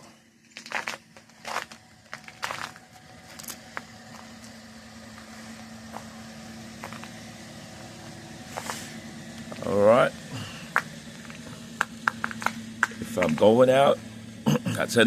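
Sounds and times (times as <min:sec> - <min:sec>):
car engine idling: 0:00.0 - 0:15.0
sharp clicks or crunches: 0:00.5 - 0:03.8.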